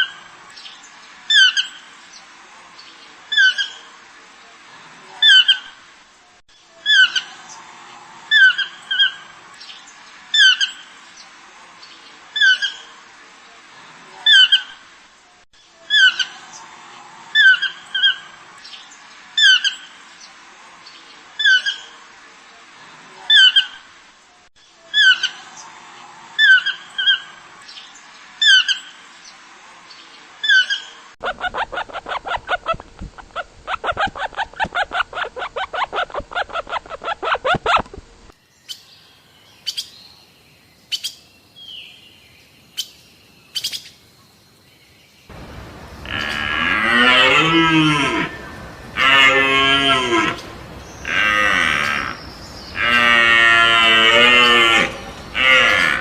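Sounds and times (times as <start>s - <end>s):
rapidly pulsing animal sound: 31.2s - 38.0s
deer calls: 45.3s - 56.0s.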